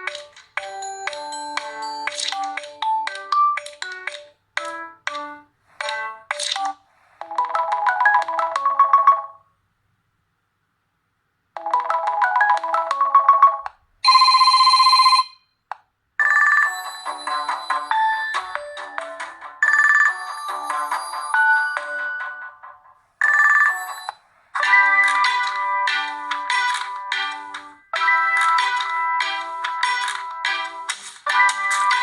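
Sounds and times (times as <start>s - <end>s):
synthesized ringtone melodies: 0.0s - 9.4s, 11.6s - 15.4s, 16.2s - 32.0s
buzzing phone ring: 14.0s - 15.5s, 19.6s - 20.7s, 23.2s - 24.2s.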